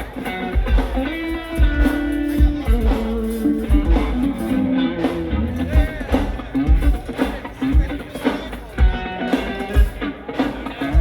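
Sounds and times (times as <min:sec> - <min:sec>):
bass guitar: 0:00.0 - 0:11.0
electric guitar sustained notes: 0:00.2 - 0:08.0.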